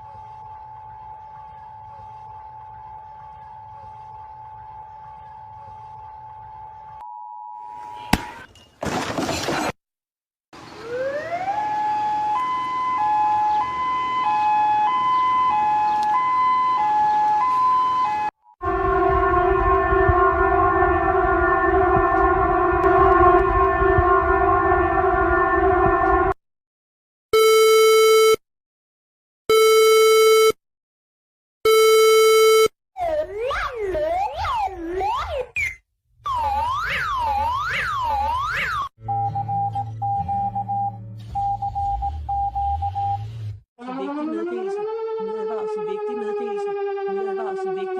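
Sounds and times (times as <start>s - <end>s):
electronic two-tone alert siren: 0.0s - 8.1s, 10.8s - 26.4s, 27.4s - 28.4s, 29.5s - 30.6s, 31.7s - 32.7s, 35.0s - 47.9s
warbling alarm tone: 36.3s - 38.9s, 43.8s - 47.9s.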